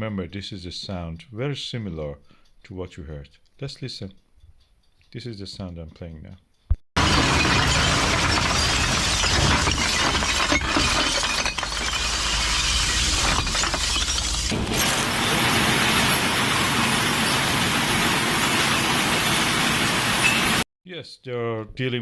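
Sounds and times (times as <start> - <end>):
glass bottles smashing: 7.0 - 17.3.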